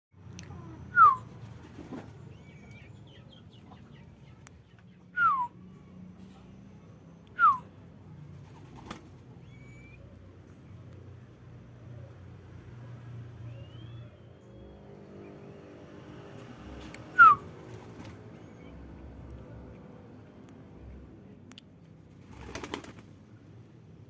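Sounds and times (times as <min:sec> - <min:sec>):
downward gliding whistled notes: 0:13.4 - 0:15.4.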